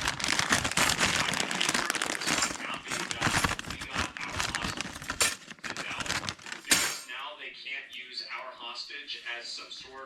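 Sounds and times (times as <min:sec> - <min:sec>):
packaging crinkling and rustling: 0:00.0 - 0:07.0.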